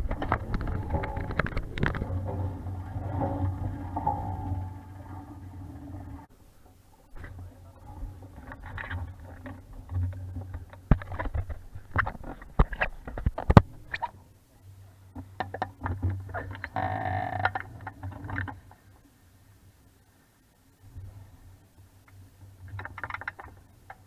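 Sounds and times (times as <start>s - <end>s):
wind rumbling on microphone: 0.0s - 6.3s
boat fittings knocking and clicking: 15.2s - 16.8s.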